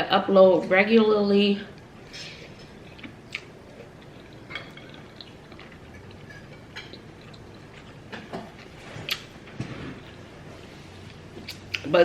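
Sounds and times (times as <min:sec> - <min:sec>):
mouth smacking while eating: 0:09.0 - 0:09.3.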